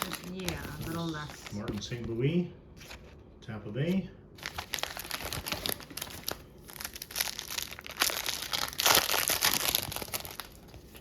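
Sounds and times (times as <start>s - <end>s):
wrapper crinkling and tearing: 0.0s - 1.6s, 4.4s - 11.0s.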